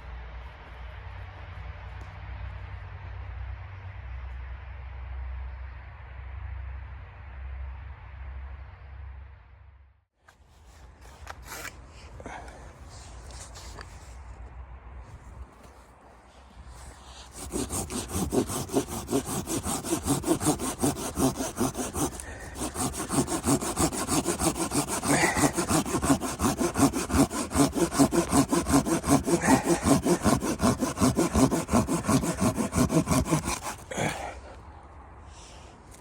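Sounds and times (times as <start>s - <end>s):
hand saw cutting wood: 11.2s - 12.4s, 16.8s - 34.4s.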